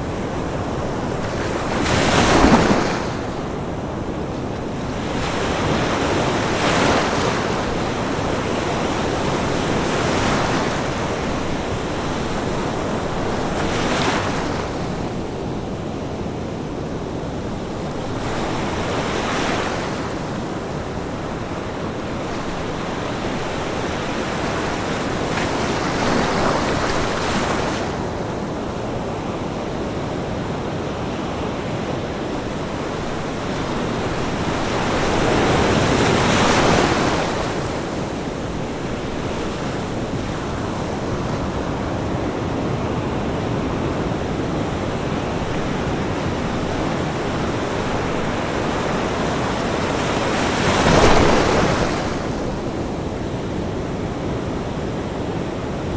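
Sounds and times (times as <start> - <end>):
ocean waves breaking on beach: 0.0 - 55.9.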